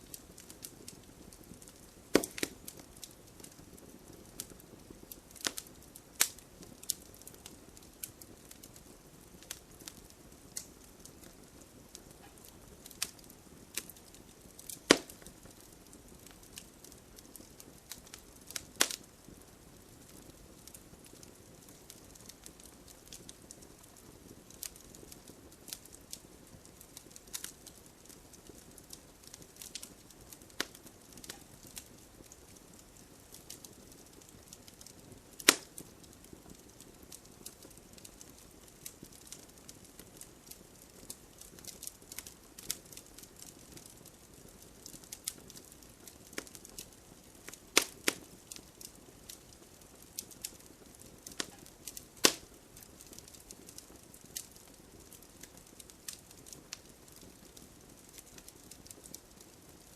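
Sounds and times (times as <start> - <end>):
campfire crackling and popping: 0.0 - 59.9.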